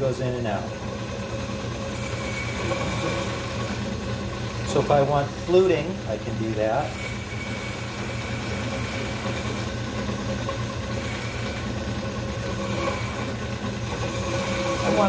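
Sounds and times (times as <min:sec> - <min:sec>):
metal lathe humming: 0:00.0 - 0:15.0
thin high whine: 0:01.8 - 0:03.9, 0:06.6 - 0:09.7, 0:14.3 - 0:15.0.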